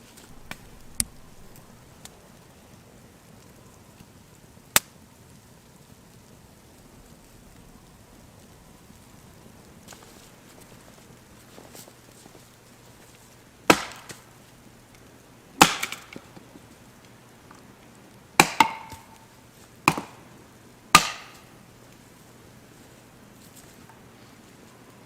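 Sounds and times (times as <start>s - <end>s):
axe chopping wood: 13.7s - 14.3s, 15.6s - 16.2s, 18.4s - 19.2s, 19.9s - 20.2s, 20.9s - 21.5s.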